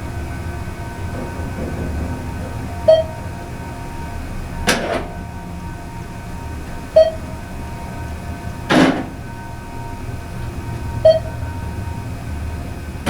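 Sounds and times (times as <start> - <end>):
elevator machine hum: 0.0 - 13.0
short electronic beep: 11.0 - 11.3.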